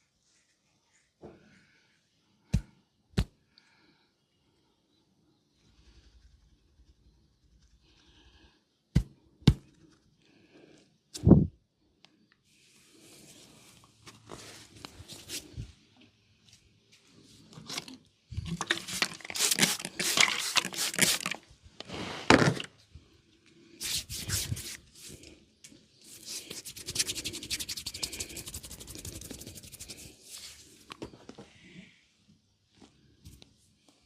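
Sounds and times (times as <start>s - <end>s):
hands rubbing oiled skin: 18.6s - 21.4s, 23.8s - 25.2s, 26.1s - 30.6s.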